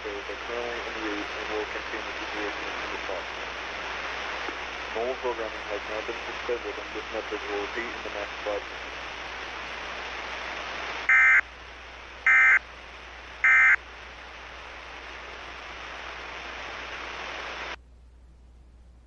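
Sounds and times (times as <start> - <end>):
static hiss: 0.0 - 19.0
data tone bursts: 11.1 - 11.4, 12.3 - 12.6, 13.4 - 13.8.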